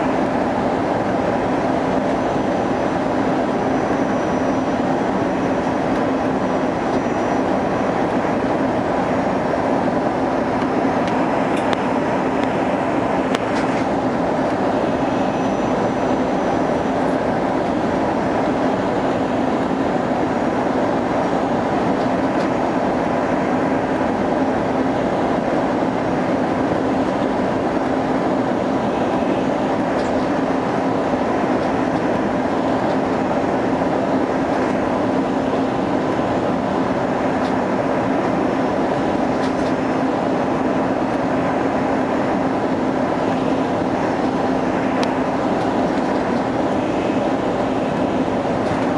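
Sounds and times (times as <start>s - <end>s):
airliner cabin roar: 0.0s - 48.9s
constant low hum: 0.0s - 48.9s
faint high tone: 15.2s - 16.6s.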